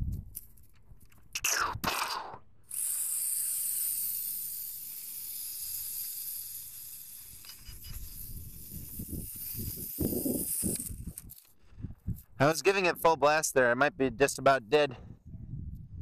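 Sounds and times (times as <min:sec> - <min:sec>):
quadcopter motors whining: 0:02.3 - 0:12.2.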